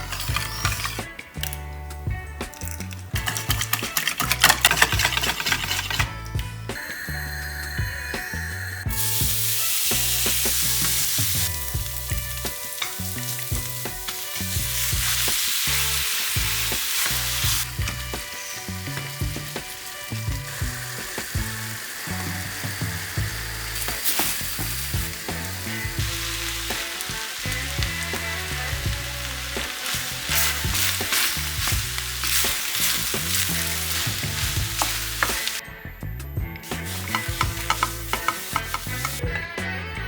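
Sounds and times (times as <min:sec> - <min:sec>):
food sizzling in hot oil: 0:00.0 - 0:01.6, 0:02.6 - 0:06.1, 0:06.8 - 0:35.6, 0:36.6 - 0:39.2
background music bass line: 0:00.0 - 0:40.0
utensil clicking against pan: 0:02.5 - 0:06.1, 0:10.0 - 0:35.6, 0:36.7 - 0:39.2.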